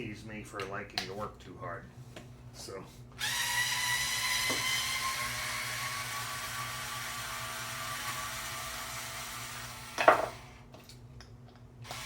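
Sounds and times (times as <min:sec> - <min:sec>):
electric screwdriver whining: 0:03.2 - 0:10.0.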